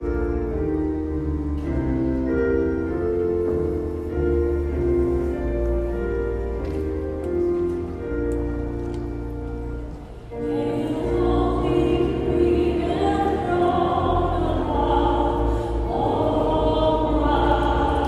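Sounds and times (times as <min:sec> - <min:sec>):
keyboard playing hymn chords: 0:00.0 - 0:18.0
choir singing: 0:10.4 - 0:18.0.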